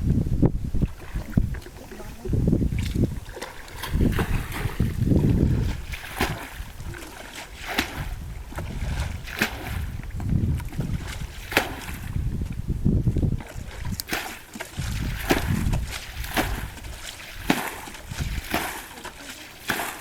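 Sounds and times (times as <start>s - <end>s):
wind rumbling on microphone: 0.0s - 19.3s
water sloshing and splashing: 0.4s - 20.0s
sharp water slaps: 2.7s - 12.5s, 13.3s - 20.0s.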